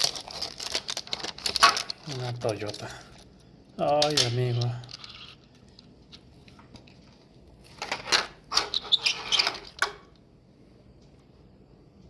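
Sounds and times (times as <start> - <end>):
toy cars clicking and clinking: 3.8 - 5.8.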